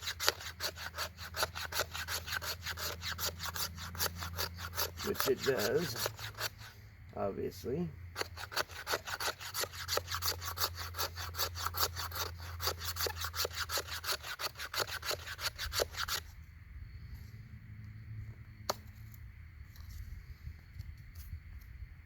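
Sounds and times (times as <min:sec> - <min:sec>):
knife spine scraping wood: 0:00.0 - 0:06.8, 0:08.1 - 0:16.4.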